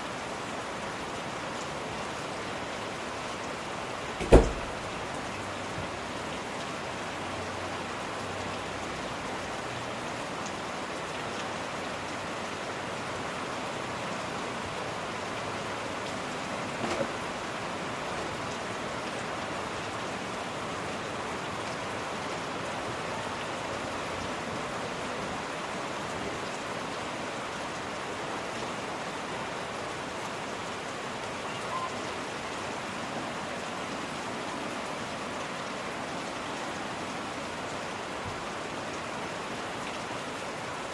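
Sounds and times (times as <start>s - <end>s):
steady rain falling: 0.0s - 40.9s
brief faint tone: 31.4s - 32.0s.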